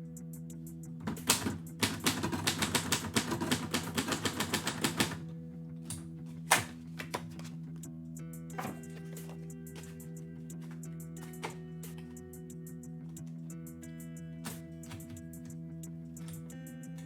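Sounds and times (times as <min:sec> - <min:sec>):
manual typewriter keystrikes: 0:01.0 - 0:05.2.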